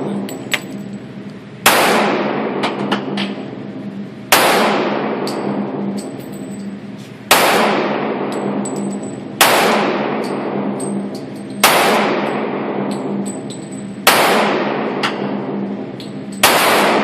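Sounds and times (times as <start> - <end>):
steady low hum: 0.0 - 17.0
pistol shots echoing: 1.6 - 3.2, 4.3 - 6.1, 7.3 - 11.0, 11.6 - 15.8, 16.4 - 17.0
light metallic clinks: 12.9 - 14.0.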